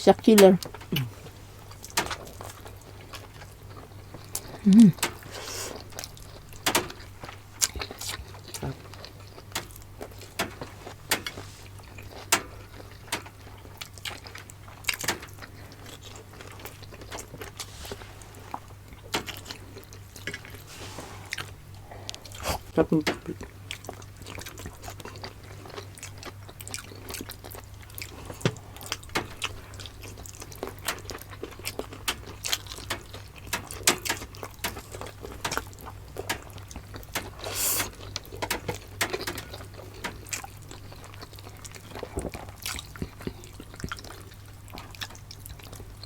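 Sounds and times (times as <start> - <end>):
wet chewing and lip smacks: 0.5 - 17.7, 21.3 - 46.0.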